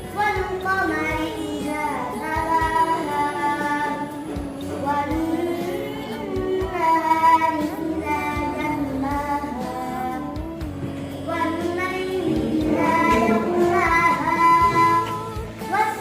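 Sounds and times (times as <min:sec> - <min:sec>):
person chanting melodically: 0:11.3 - 0:15.5.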